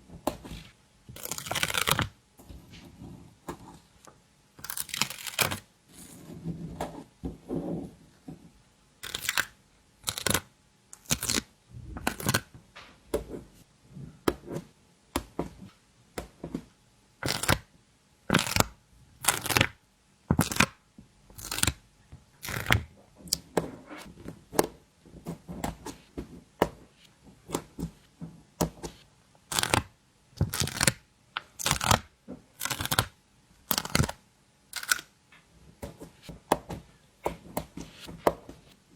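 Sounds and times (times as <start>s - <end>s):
stickers peeling and rustling: 33.7s - 34.2s.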